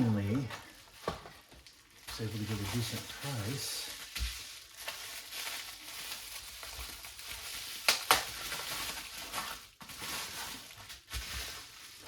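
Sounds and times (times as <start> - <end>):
packaging rustling: 0.0 - 12.0.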